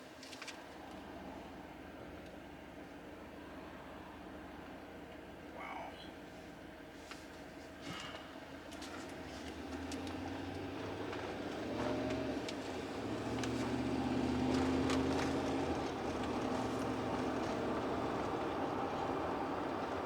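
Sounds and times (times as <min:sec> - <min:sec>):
car engine and road drone: 0:07.3 - 0:20.0.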